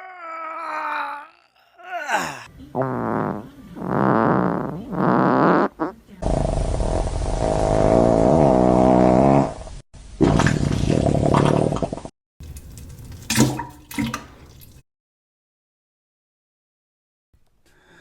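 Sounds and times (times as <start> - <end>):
rumbling fart: 2.7 - 12.1.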